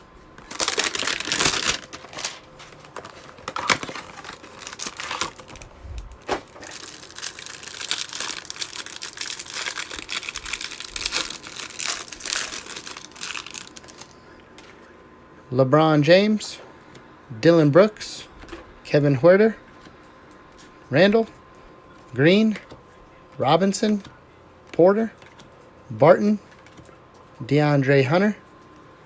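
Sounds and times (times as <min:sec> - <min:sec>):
packaging tearing and crinkling: 0:00.4 - 0:14.1.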